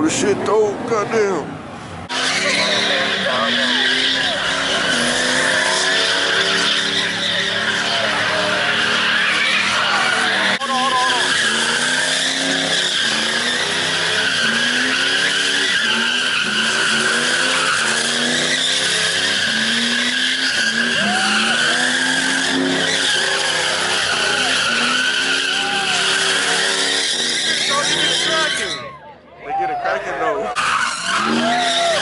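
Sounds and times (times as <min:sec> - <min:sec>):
car engine revving: 0:02.0 - 0:28.8
tyres squealing: 0:02.1 - 0:29.1, 0:30.5 - 0:32.0.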